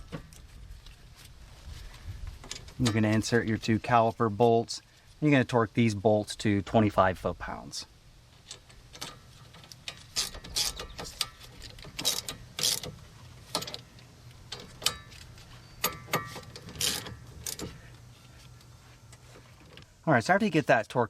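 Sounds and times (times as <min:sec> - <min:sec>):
ratchet wrench clicking: 0:08.5 - 0:12.9.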